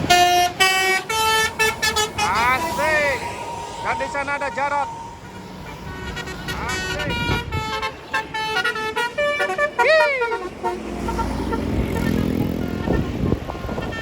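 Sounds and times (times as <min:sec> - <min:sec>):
bus horn playing a tune: 0:00.0 - 0:02.8, 0:05.8 - 0:14.0
bus engine rumbling: 0:00.0 - 0:14.0.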